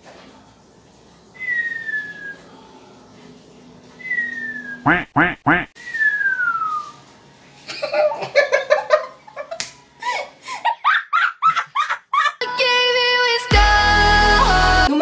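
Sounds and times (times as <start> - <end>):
person whistling snore: 4.0 - 4.8, 5.8 - 7.0
loud laughter: 7.8 - 12.4.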